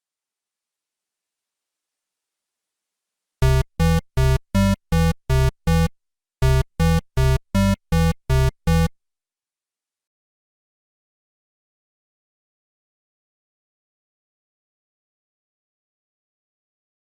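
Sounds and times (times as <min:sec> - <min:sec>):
short synthesizer melody: 0:03.4 - 0:08.9.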